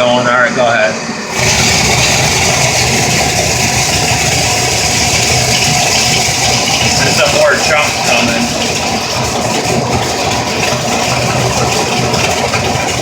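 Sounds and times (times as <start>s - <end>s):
vent cleaning motor running: 0.0s - 13.0s
loud rushing hiss: 1.0s - 8.5s.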